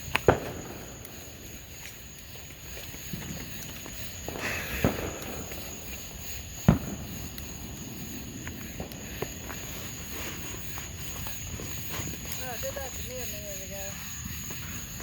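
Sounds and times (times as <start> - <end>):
fireworks bangs with echo: 0.0 - 1.9, 4.2 - 10.4
faint firework pops: 0.0 - 12.4.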